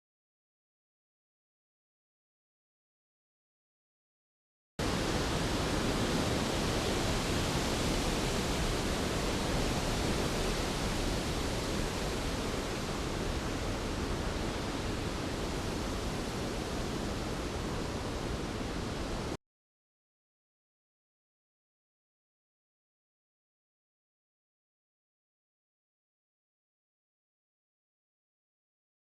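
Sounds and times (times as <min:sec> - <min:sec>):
heavy rain: 0:04.8 - 0:19.4.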